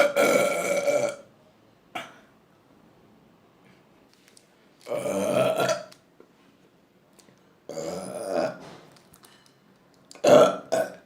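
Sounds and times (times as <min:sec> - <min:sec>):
woman burping: 0:00.0 - 0:01.2, 0:04.9 - 0:05.9, 0:07.7 - 0:08.6, 0:10.2 - 0:11.0.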